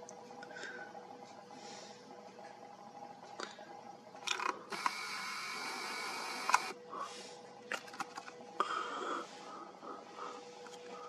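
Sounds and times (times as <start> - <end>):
small mechanism whirring: 4.2 - 6.8
sharp clicks: 6.2 - 6.8.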